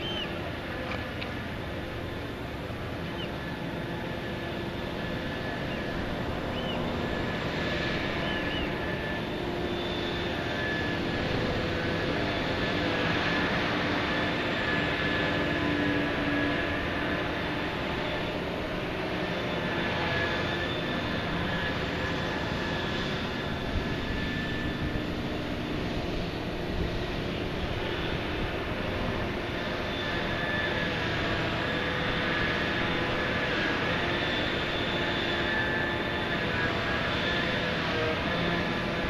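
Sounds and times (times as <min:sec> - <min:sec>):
steady mechanical drone: 0:00.0 - 0:39.0.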